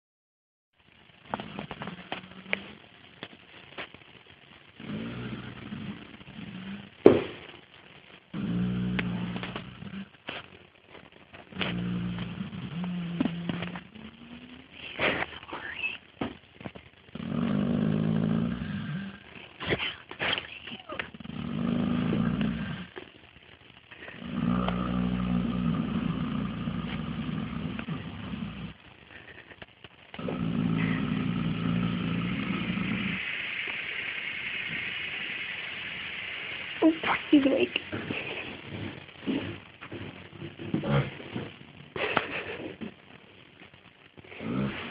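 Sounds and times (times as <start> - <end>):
horse snoring: 4.8 - 6.9, 8.4 - 10.1, 11.5 - 14.4, 17.2 - 19.2, 21.2 - 23.0, 24.2 - 28.8, 30.2 - 33.4, 44.4 - 44.9.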